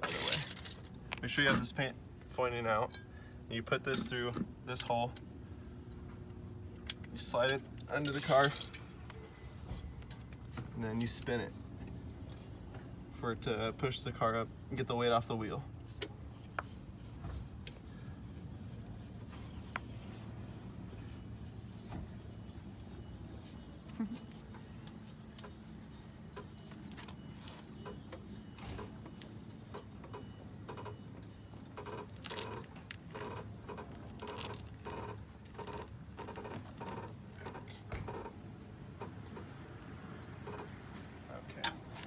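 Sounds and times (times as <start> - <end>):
car jack cranking squeak and click: 7.2 - 8.9.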